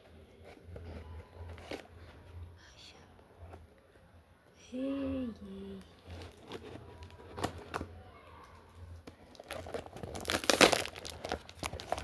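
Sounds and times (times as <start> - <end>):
packaging tearing and crinkling: 9.3 - 12.0.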